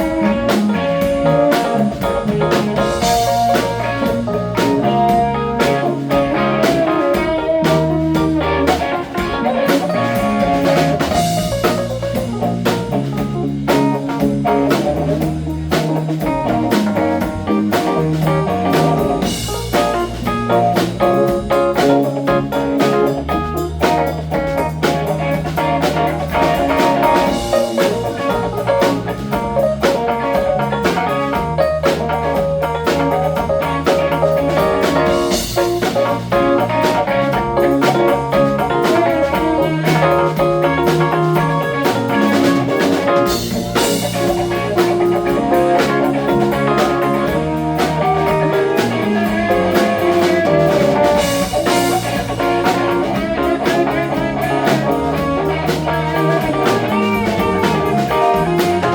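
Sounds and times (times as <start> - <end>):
blues-rock band playing: 0.0 - 58.9.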